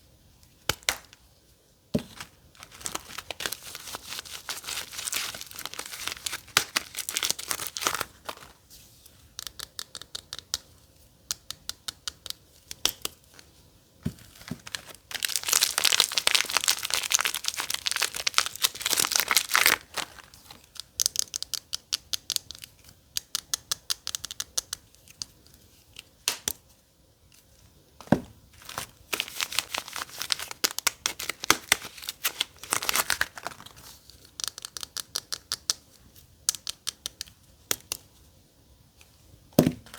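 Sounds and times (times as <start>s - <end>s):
soap wrapper crinkling and tearing: 2.1s - 8.6s, 14.2s - 22.7s, 28.6s - 35.8s.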